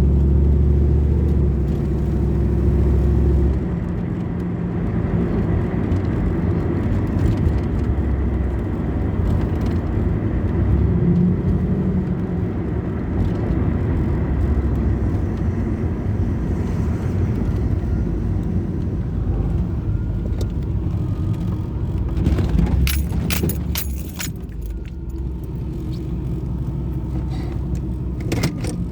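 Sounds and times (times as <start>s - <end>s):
sharp clicks or rattles: 22.4s - 25.1s.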